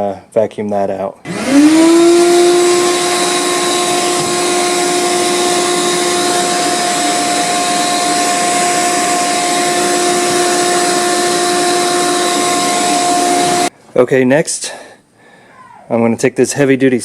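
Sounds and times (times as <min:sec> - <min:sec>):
vacuum cleaner whining: 0:01.3 - 0:13.7.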